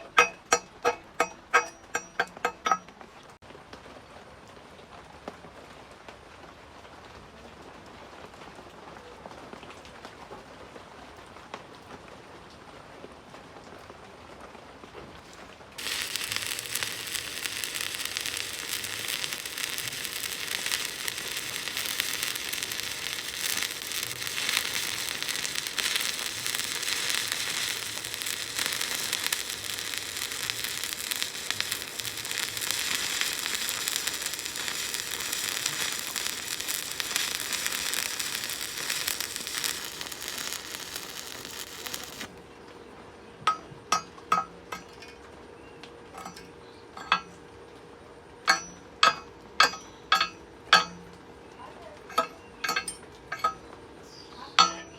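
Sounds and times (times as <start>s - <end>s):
welding arc crackling and sizzling: 0.0s - 2.9s, 15.8s - 42.3s, 48.5s - 51.0s, 52.0s - 53.6s, 54.6s - 54.9s.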